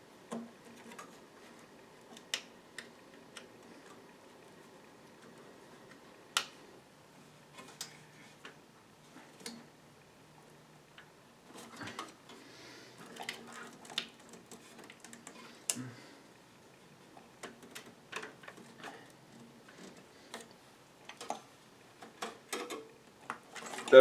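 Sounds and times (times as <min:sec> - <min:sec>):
computer parts clicking and tapping: 0:13.0 - 0:15.8, 0:17.1 - 0:24.0.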